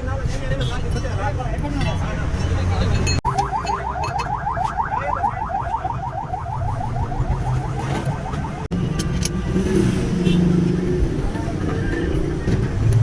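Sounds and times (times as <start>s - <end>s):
electronic siren chirping: 3.2s - 8.7s.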